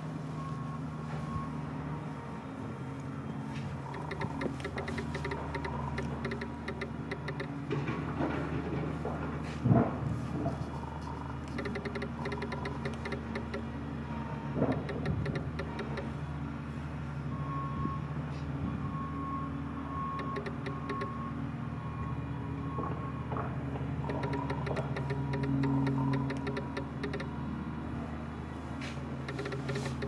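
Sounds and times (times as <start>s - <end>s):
machinery engine running: 2.0s - 9.3s, 10.2s - 16.6s, 20.1s - 21.2s, 23.7s - 30.0s
reversing alarm beeping: 3.8s - 7.6s, 11.5s - 16.2s, 17.2s - 23.3s, 24.0s - 27.4s, 29.3s - 30.0s
rapid clicking: 3.9s - 7.6s, 11.0s - 13.7s, 14.6s - 16.1s, 20.2s - 21.2s, 24.1s - 27.3s, 29.3s - 30.0s.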